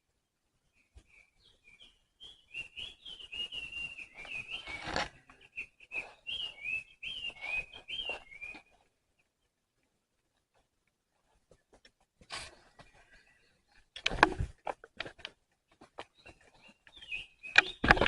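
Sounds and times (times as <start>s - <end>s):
rustling: 3.9s - 5.4s.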